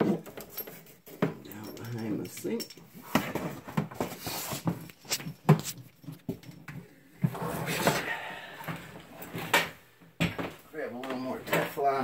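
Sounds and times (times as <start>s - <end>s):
scraping rustle of hose: 4.1s - 5.8s.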